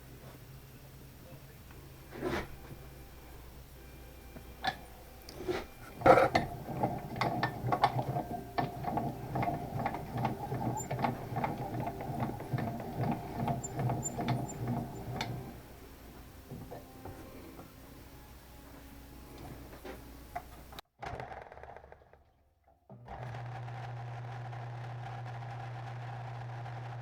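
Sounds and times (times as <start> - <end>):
milling machine cutting plastic: 4.4 - 18.1.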